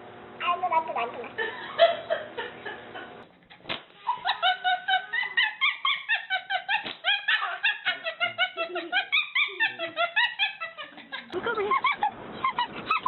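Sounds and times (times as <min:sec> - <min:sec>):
dog yipping: 0:05.4 - 0:08.2, 0:08.8 - 0:10.8, 0:12.4 - 0:13.0.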